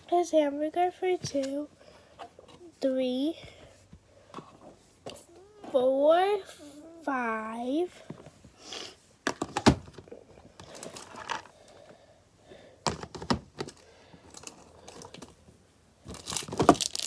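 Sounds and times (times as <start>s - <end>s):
plastic toys clicking and knocking: 12.9s - 15.3s, 16.1s - 17.0s.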